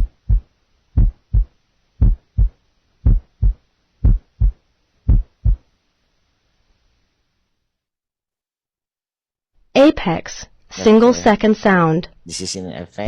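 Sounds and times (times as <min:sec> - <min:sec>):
heartbeat: 0:00.0 - 0:05.7.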